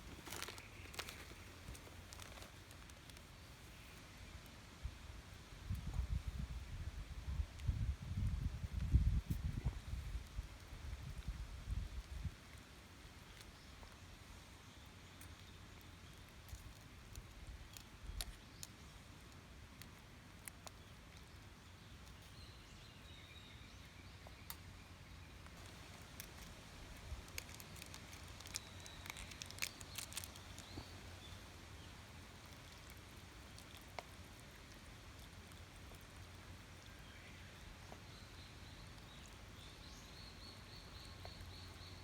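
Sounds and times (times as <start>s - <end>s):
wood fire crackling: 0.0s - 3.6s, 25.4s - 36.8s.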